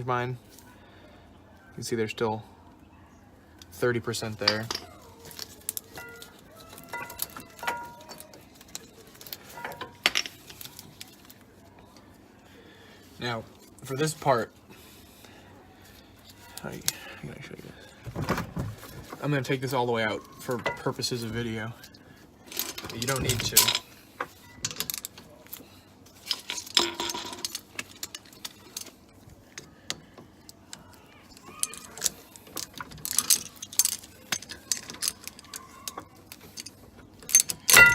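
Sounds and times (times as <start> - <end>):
metal clinks and taps: 4.5 - 10.7, 31.6 - 37.9.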